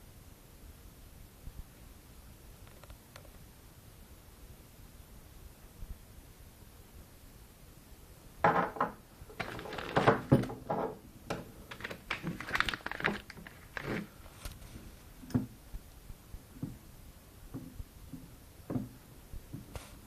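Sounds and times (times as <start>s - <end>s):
hard objects clinking and rattling: 8.5s - 14.1s.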